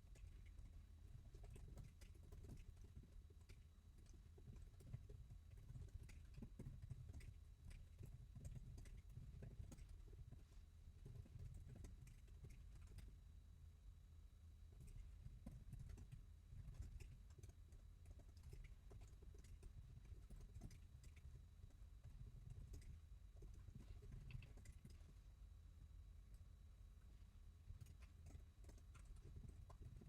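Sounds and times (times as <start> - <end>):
low room hum: 0.0 - 30.0.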